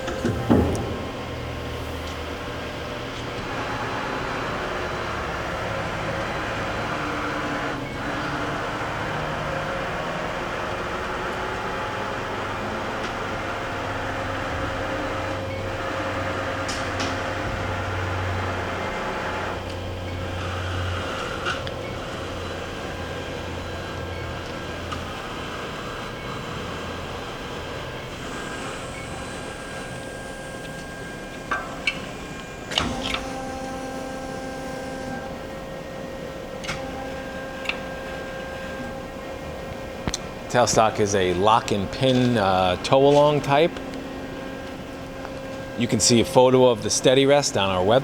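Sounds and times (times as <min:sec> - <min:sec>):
motor whine: 0:00.0 - 0:45.8
machine hum: 0:00.0 - 0:48.0.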